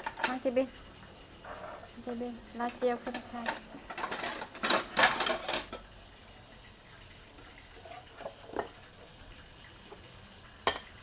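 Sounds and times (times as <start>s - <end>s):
utensils and dishes clattering: 0.0s - 0.5s, 2.6s - 5.8s.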